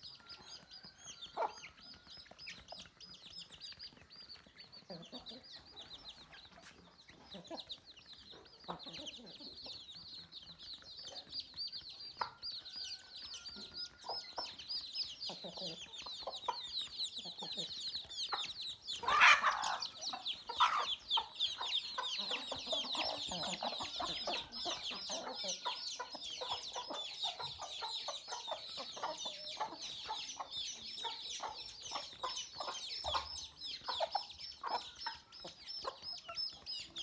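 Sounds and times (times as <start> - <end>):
chickens peeping and clucking: 0.0 - 37.0
loud chicken call: 19.0 - 20.0.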